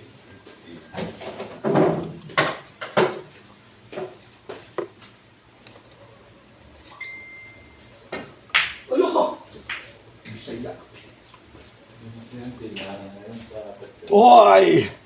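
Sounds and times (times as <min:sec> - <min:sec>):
billiard balls knocking: 0:08.1 - 0:08.9.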